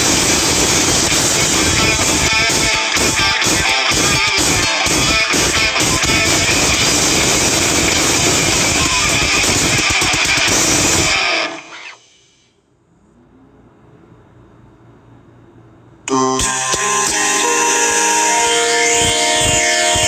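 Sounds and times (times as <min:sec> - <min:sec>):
rock ringtone on phone: 0:00.0 - 0:12.0, 0:16.1 - 0:20.0
faint low hum: 0:12.5 - 0:16.4.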